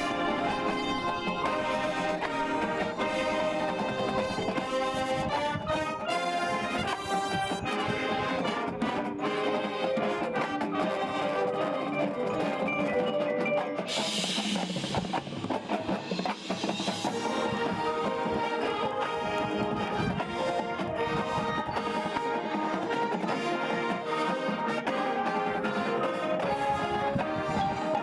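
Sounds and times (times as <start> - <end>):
brass sustained chords: 0.0 - 12.5, 17.0 - 28.0
drums and mallet percussion: 0.0 - 28.0
cymbal crash: 13.9 - 18.0.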